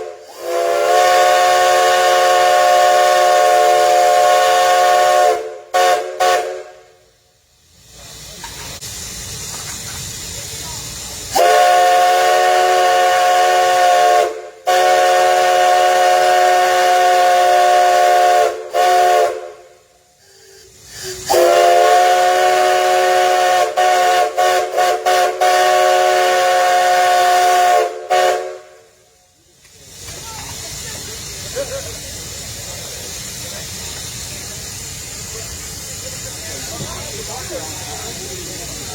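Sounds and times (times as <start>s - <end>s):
steam locomotive whistle: 0.0s - 7.0s, 11.3s - 29.1s
steam hissing: 0.0s - 38.9s.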